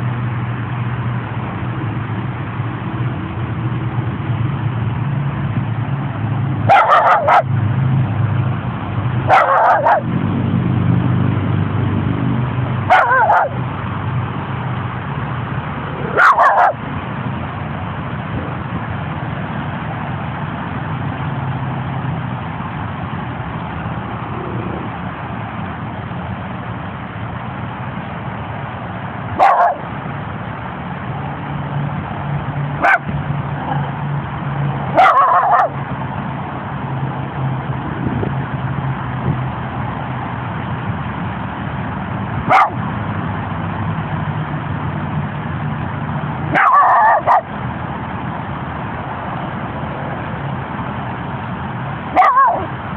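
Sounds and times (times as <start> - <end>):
small dog barking: 6.7 - 7.5, 9.3 - 10.1, 12.9 - 13.6, 16.1 - 16.8, 29.4 - 29.8, 32.8 - 33.9, 34.9 - 35.8, 42.4 - 42.8, 46.5 - 47.5, 52.1 - 52.7.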